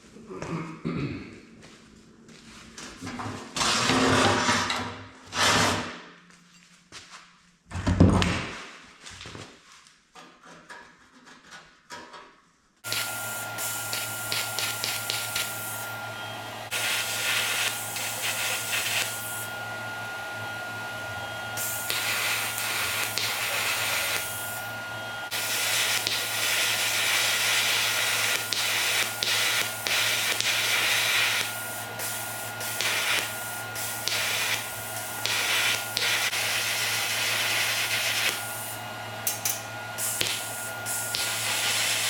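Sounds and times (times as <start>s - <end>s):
metalworking tool hissing and crackling: 12.8s - 19.7s, 21.1s - 42.0s.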